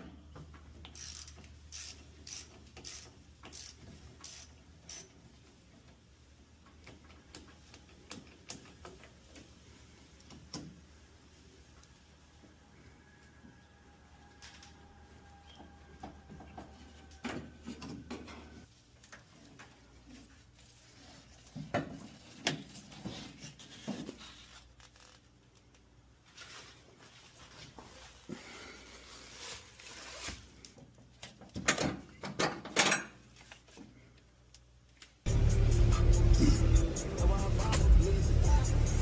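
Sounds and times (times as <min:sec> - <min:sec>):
rustling: 0:18.4 - 0:30.8.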